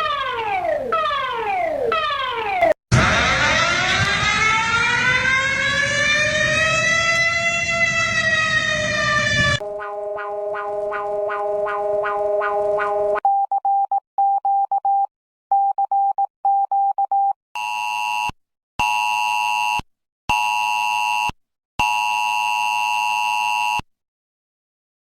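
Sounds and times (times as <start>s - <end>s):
pulsing siren-like tone: 0.0s - 13.2s
long electronic tones: 2.9s - 13.2s.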